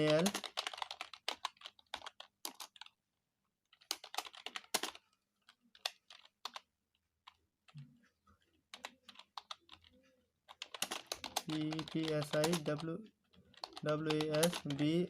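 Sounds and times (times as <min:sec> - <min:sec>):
keyboard typing clicks: 0:00.0 - 0:02.9, 0:03.8 - 0:05.0, 0:08.7 - 0:12.9, 0:13.5 - 0:15.0.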